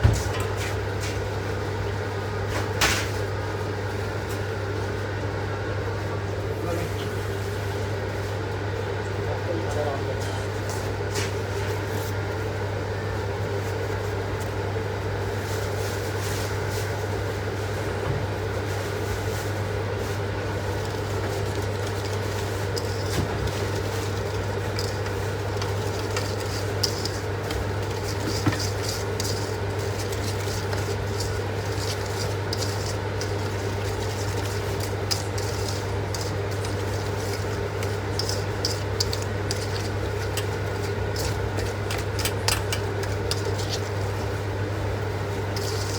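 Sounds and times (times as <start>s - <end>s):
steady low hum: 18.7s - 45.9s
utensils clinking against dishes: 20.8s - 44.3s, 45.5s - 45.9s.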